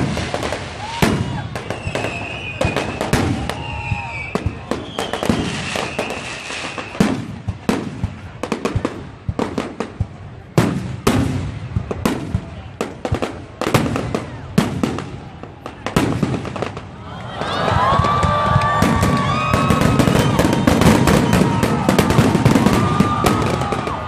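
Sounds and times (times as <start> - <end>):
firework whistling: 0.0 - 7.4, 17.4 - 24.0
loud firework booms: 0.0 - 16.9, 17.8 - 24.0
fireworks bursts and crackling: 0.0 - 24.0.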